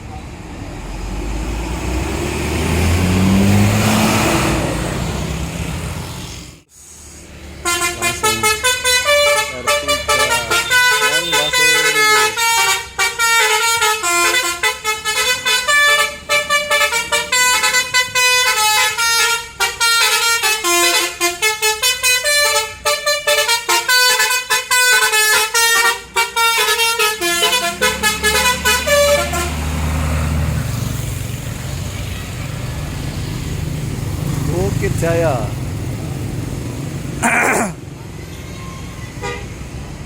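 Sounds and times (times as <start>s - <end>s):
bus engine rumbling: 0.0s - 40.0s
musical bus horn tune: 7.6s - 29.9s, 38.4s - 39.7s.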